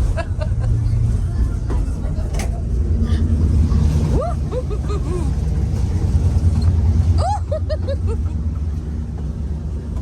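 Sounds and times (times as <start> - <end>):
vehicle rumble from inside: 0.0 - 10.0.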